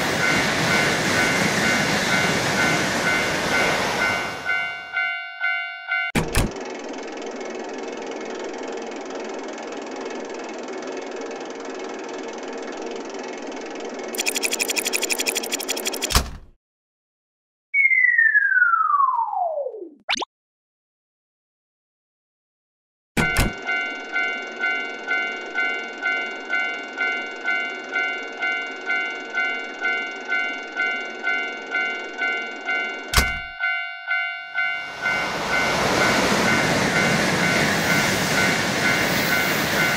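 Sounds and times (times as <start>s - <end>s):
cartoon train rattling past: 0.0s - 5.1s, 34.1s - 39.9s
railroad crossing bell ringing: 0.0s - 6.2s, 23.2s - 39.9s.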